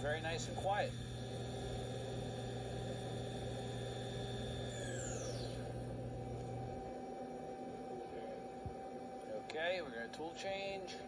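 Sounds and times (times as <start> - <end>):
machine spindle hum and whine: 0.0 - 11.0.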